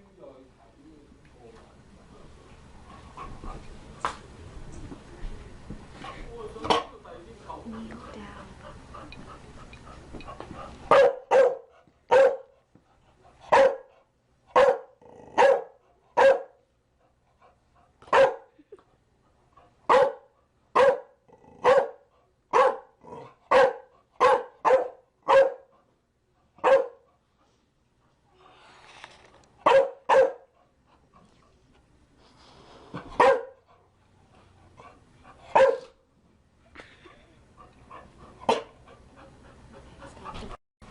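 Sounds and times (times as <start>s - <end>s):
dog barking: 10.9s - 12.5s, 13.5s - 13.9s, 14.5s - 16.6s, 18.1s - 18.5s, 19.9s - 25.7s, 26.6s - 27.1s, 29.6s - 30.5s, 33.2s - 33.6s, 35.5s - 36.0s, 38.5s - 38.7s.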